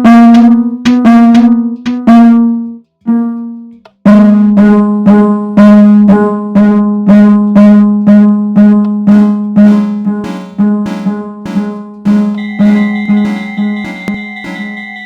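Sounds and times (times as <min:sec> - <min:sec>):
electronic fire alarm chimes: 0:09.1 - 0:15.0
lower-pitched chime: 0:09.7 - 0:15.0.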